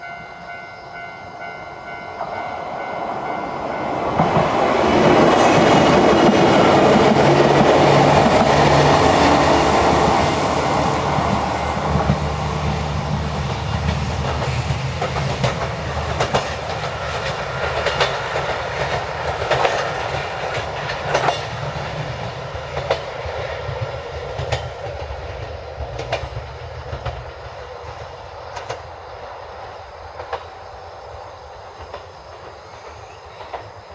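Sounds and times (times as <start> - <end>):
electric train passing: 0.0 - 33.9
wheels clicking over rail joints: 2.2 - 33.9.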